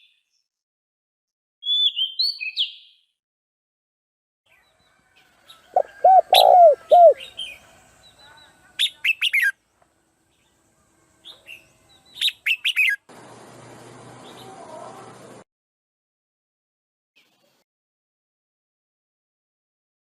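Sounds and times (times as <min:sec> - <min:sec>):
birds calling: 0:05.5 - 0:08.2
high falling bird chirps: 0:05.6 - 0:08.3.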